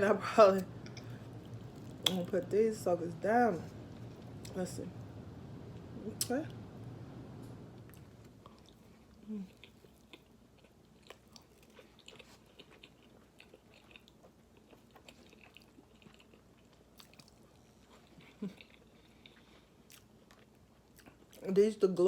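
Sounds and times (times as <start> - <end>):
chewing food: 0.8 - 2.4, 7.9 - 21.5.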